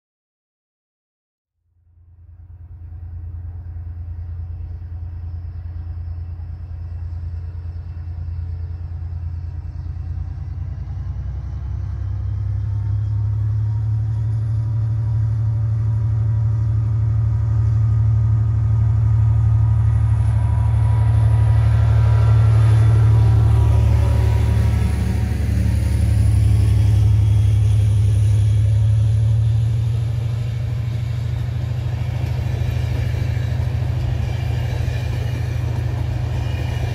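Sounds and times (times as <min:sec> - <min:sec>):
diesel locomotive engine rumbling: 0:01.8 - 0:36.9.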